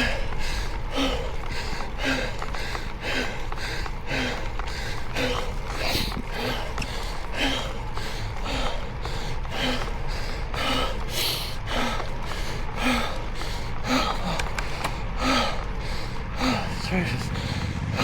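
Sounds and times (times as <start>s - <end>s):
person breathing heavily: 0.0s - 18.0s
voiced grunts: 16.3s - 18.0s.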